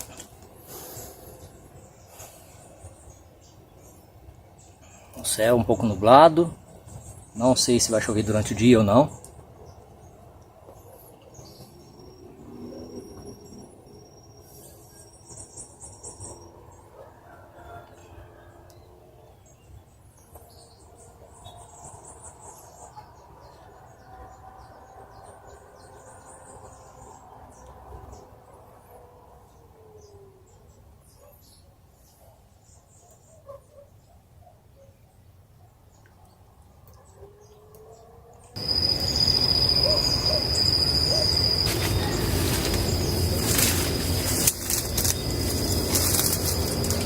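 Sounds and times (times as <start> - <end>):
high bird chirps and trills: 38.6 - 47.0
high-pitched whine: 38.6 - 47.0
low rumble: 38.6 - 47.0
steady insect tones: 38.6 - 47.0.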